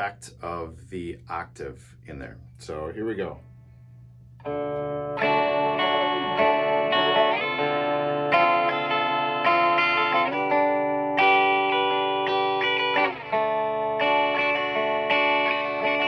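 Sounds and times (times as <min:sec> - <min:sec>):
electric guitar chords with reverb: 0:04.4 - 0:16.0.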